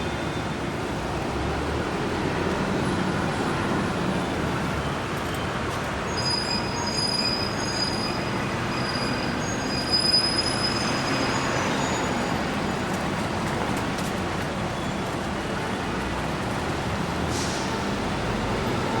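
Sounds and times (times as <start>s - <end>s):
high-pitched squeal: 6.0s - 12.9s.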